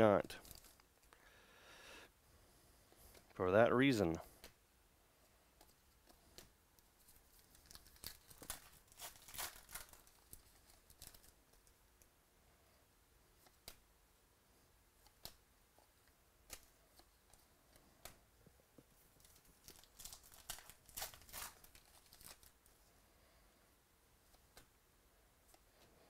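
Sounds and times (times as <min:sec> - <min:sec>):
wrapper tearing and crinkling: 0:00.3 - 0:00.8, 0:07.0 - 0:11.4, 0:19.2 - 0:22.6.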